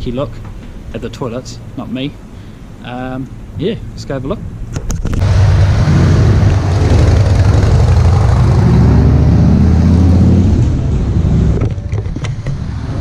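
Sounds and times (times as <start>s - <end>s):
vehicle engine running loudly: 5.2s - 13.0s.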